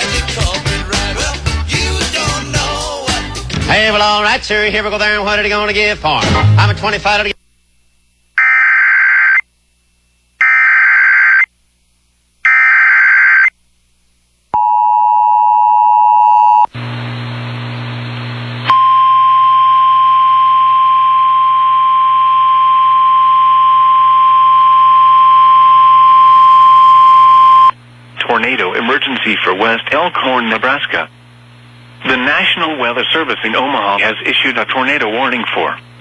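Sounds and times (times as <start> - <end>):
screeching digital header tones: 8.4 - 9.4, 10.4 - 11.5, 12.5 - 13.5
steady warning alarm tone: 8.4 - 9.4, 10.4 - 11.5, 12.5 - 13.5, 18.7 - 27.7.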